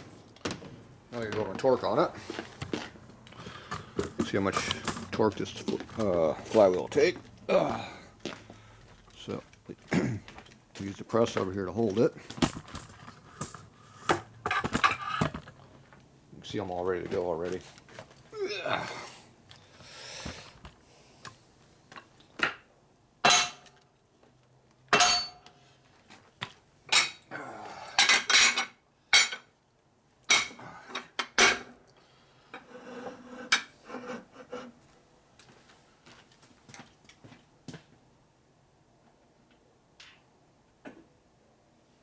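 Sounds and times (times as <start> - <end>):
scraping and shuffling: 0.0 - 20.8
steel tools clanking: 23.2 - 23.9, 24.9 - 25.5.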